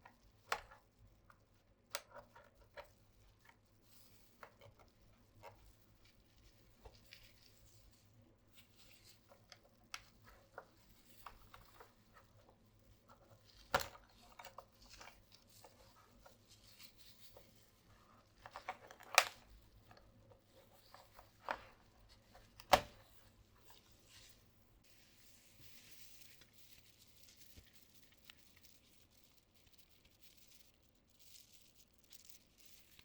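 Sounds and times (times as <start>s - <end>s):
plastic clicks and scrapes: 0.0s - 7.7s, 8.6s - 23.9s.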